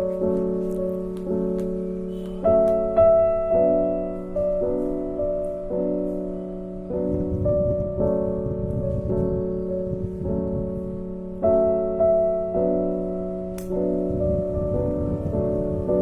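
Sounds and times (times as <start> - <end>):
slow piano chords: 0.0 - 16.0.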